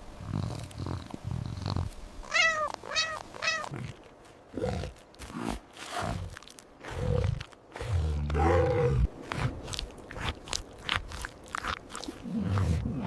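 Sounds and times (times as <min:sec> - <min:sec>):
crunching chewing clicks: 0:00.2 - 0:13.0
big cat growling: 0:03.1 - 0:09.6, 0:11.5 - 0:13.0.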